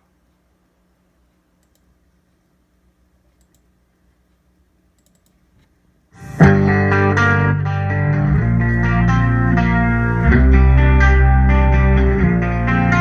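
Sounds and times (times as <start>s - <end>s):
faint clicks: 1.2s - 2.5s, 3.2s - 5.8s
low hum: 6.1s - 13.0s
rock song through speakers: 6.2s - 13.0s.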